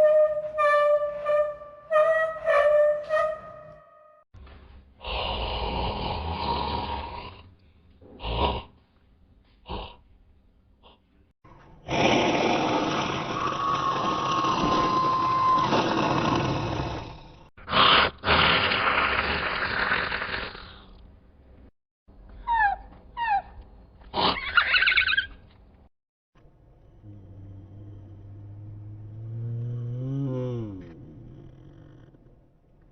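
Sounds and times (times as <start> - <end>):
dinosaur growl: 5.0 - 7.5, 11.8 - 20.9, 26.8 - 32.6
dinosaur roar: 11.8 - 20.8, 26.8 - 32.4
dinosaur grunts: 26.9 - 32.3.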